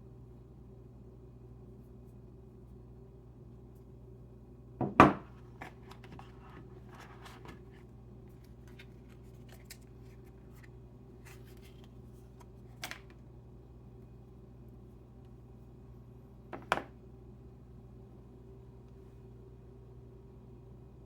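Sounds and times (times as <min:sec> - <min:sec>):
knocks on phone: 0:04.8 - 0:05.2, 0:16.6 - 0:16.9.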